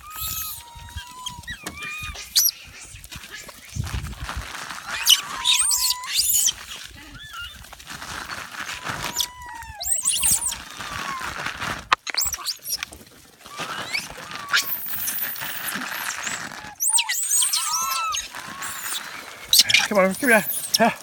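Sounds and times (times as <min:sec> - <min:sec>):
monkeys squealing: 0:00.0 - 0:03.6, 0:04.8 - 0:07.6, 0:08.8 - 0:11.3, 0:13.5 - 0:21.0.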